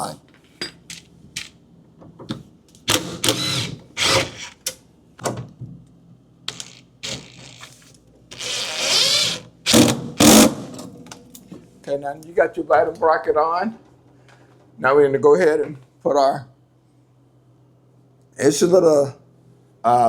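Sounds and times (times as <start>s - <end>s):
power screwdriver driving screws: 2.9s - 4.6s, 6.5s - 10.6s.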